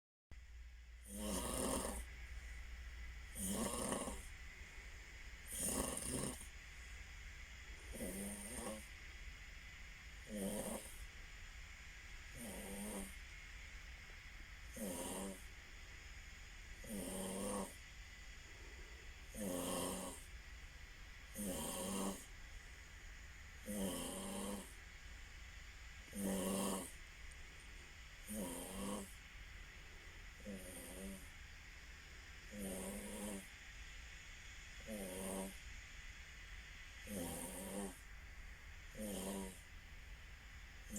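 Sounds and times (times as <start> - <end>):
faint high whine: 0.3 - 40.9
person snoring: 1.0 - 2.1, 3.3 - 4.4, 5.4 - 6.5, 7.8 - 9.0, 10.2 - 11.1, 12.3 - 13.2, 14.7 - 15.5, 16.7 - 17.8, 19.3 - 20.3, 21.3 - 22.3, 23.6 - 24.8, 26.1 - 27.0, 28.2 - 29.2, 30.4 - 31.3, 32.5 - 33.5, 34.8 - 35.6, 37.0 - 38.0, 38.9 - 39.6.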